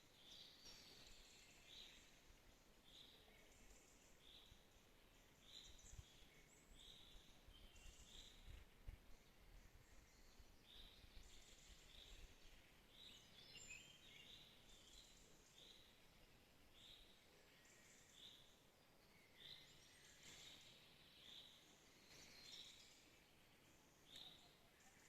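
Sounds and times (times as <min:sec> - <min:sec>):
soft background hiss: 0:00.0 - 0:25.0.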